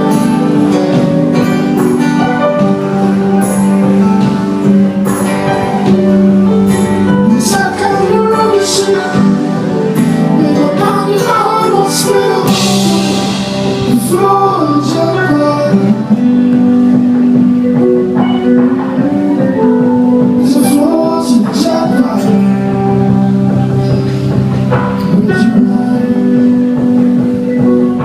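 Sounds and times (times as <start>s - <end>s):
live band playing loudly: 0.0s - 28.0s
person singing: 4.8s - 17.4s, 18.6s - 24.2s, 24.8s - 28.0s.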